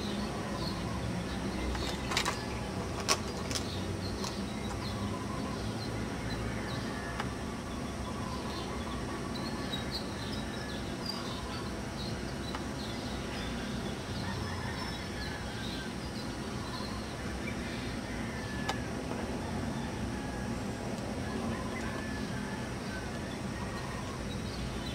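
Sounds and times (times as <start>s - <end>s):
small birds chirping: 0.0s - 18.9s.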